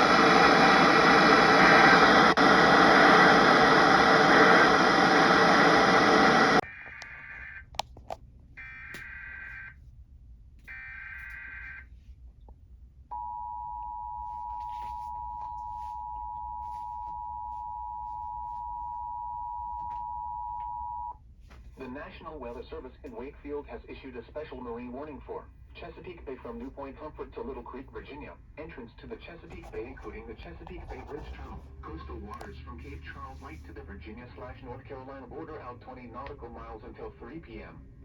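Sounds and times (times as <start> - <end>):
loud radio static: 0.0 - 7.6, 21.8 - 37.8.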